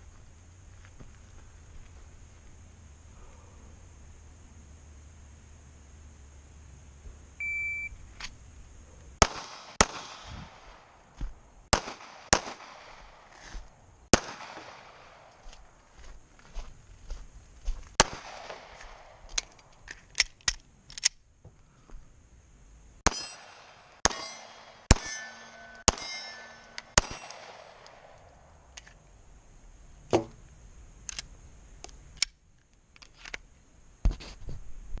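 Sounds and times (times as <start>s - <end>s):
pistol shots: 9.2s - 10.9s, 11.7s - 13.3s, 14.1s - 15.4s, 18.0s - 19.3s, 23.0s - 28.2s.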